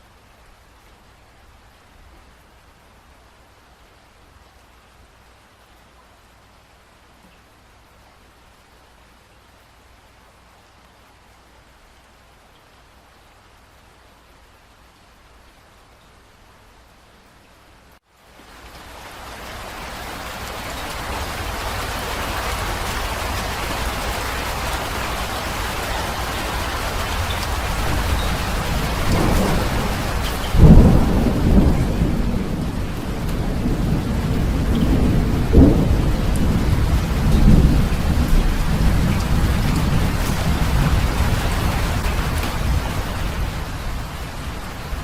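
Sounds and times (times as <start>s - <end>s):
heavy rain: 0.0s - 45.0s
thunder rumbling: 26.0s - 45.0s.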